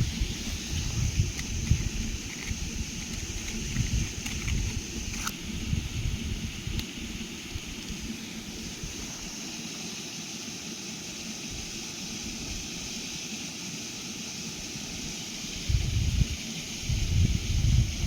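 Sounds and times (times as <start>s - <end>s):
wind buffeting microphone: 0.0s - 9.0s, 15.5s - 18.0s
steady hiss: 0.0s - 18.0s.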